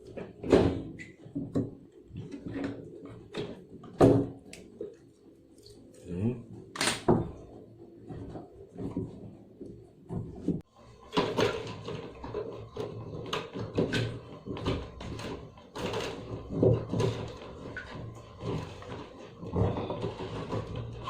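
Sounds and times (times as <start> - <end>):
plastic parts knocking and clicking: 8.2 - 21.0.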